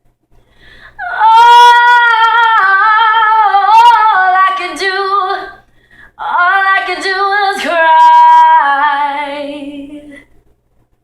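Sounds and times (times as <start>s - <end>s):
woman singing a long note: 1.0s - 5.6s, 6.2s - 10.2s.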